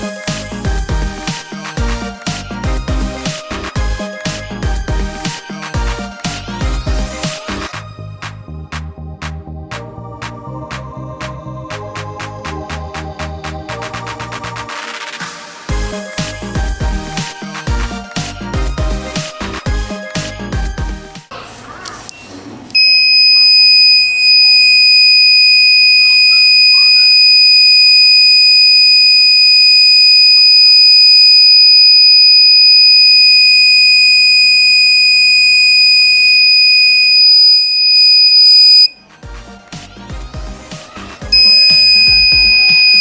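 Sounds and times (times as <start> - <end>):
music: 0.0 - 21.4, 39.0 - 43.0
alarm buzzer high-pitched tone: 22.8 - 39.0, 41.3 - 43.0.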